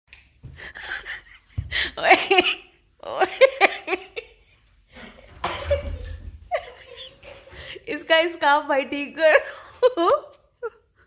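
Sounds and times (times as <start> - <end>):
person laughing in bursts: 5.0 - 7.6.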